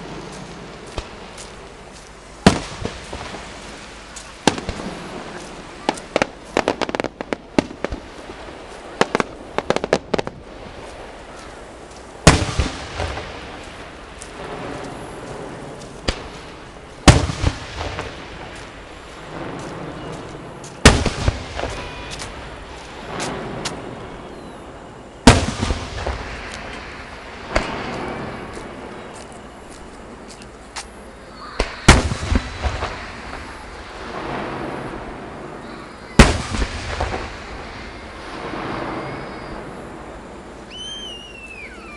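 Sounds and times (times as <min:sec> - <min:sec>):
fireworks banging: 0:00.0 - 0:30.9, 0:31.6 - 0:41.9
shell burst with rumbling echoes: 0:12.2 - 0:14.8, 0:16.0 - 0:20.0, 0:20.8 - 0:21.8, 0:25.2 - 0:28.5.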